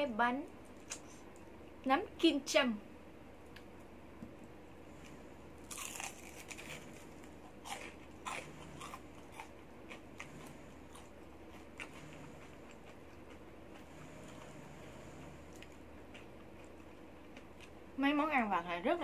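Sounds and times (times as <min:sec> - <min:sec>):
crispy food crunching: 0:05.6 - 0:14.5.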